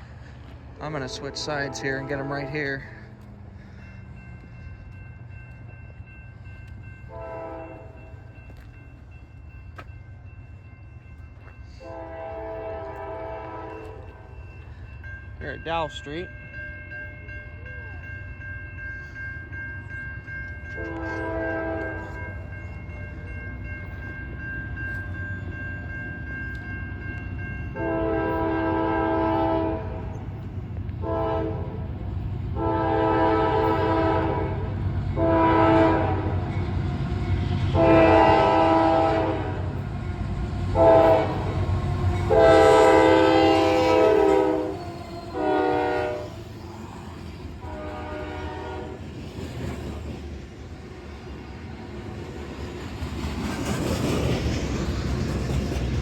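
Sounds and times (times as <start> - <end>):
train rumble: 0.0 - 56.0
locomotive horn blasts: 1.1 - 2.8, 7.1 - 8.1, 11.8 - 14.2, 20.7 - 22.2, 27.8 - 30.1, 31.0 - 31.8, 32.5 - 36.5, 37.7 - 39.8, 40.7 - 46.4, 47.6 - 49.0.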